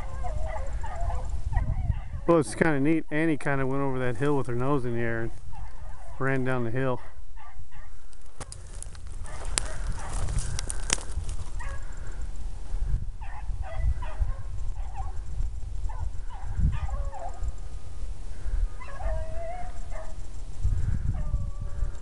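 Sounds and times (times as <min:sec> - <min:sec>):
hounds baying: 0:00.0 - 0:02.4, 0:05.4 - 0:12.2, 0:13.2 - 0:17.6, 0:18.6 - 0:20.3
wind rumbling on microphone: 0:00.0 - 0:22.0.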